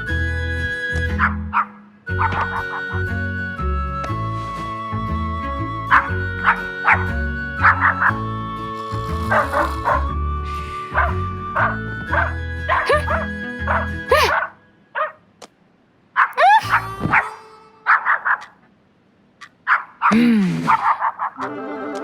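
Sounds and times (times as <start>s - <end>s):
background music: 0.0s - 14.6s, 21.4s - 22.0s
cartoon dog barking: 12.7s - 15.2s, 16.2s - 18.6s, 19.7s - 21.4s.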